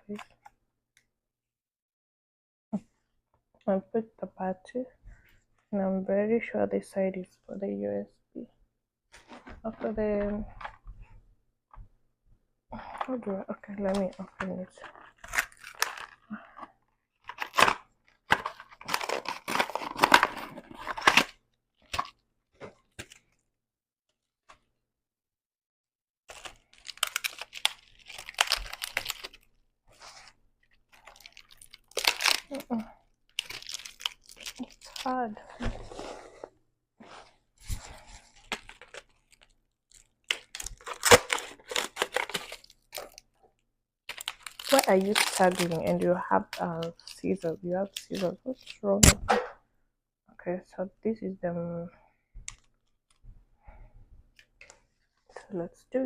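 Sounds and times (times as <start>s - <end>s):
packaging crinkling and tearing: 13.8s - 23.3s, 26.3s - 35.2s, 37.0s - 43.3s, 44.1s - 49.2s.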